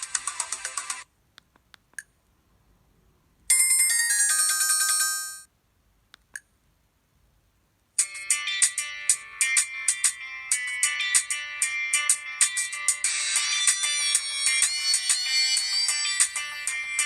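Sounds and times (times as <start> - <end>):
phone ringtones: 3.5 - 5.5.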